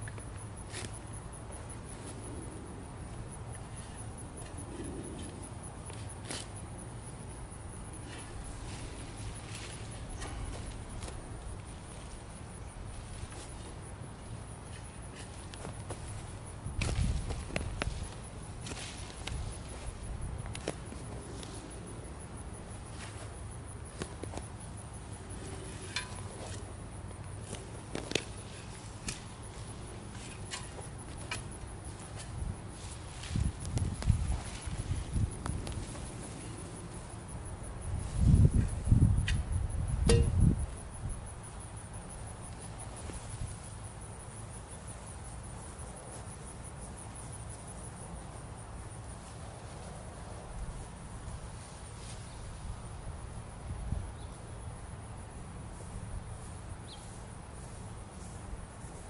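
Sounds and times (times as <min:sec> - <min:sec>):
insects chirping: 0:00.0 - 0:59.0
low continuous rumble: 0:00.0 - 0:59.0
knocks and snaps of digging: 0:16.8 - 0:19.4, 0:29.0 - 0:29.4.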